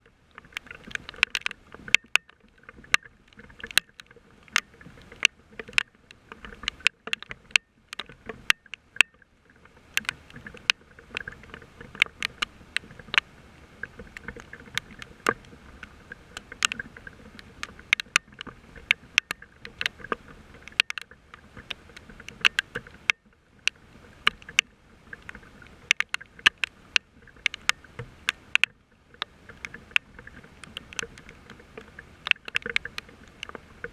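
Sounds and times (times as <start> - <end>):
raindrops tapping near microphone: 0.0 - 33.9
steady hiss of falling rain: 0.0 - 33.9.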